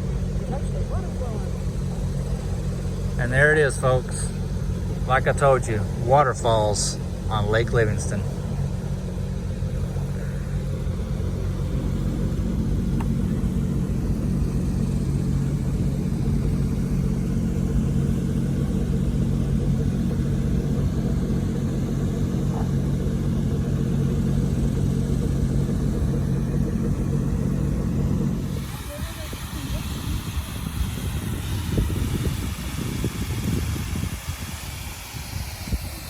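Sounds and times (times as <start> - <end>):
boat motor humming: 0.0 - 36.0.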